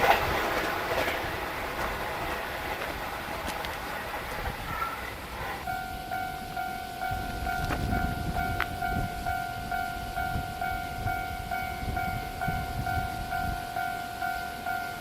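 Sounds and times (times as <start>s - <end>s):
wheels knocking over rail joints: 0.0s - 9.8s
train rumbling past: 0.0s - 15.0s
level-crossing electronic warning bell: 4.2s - 15.0s.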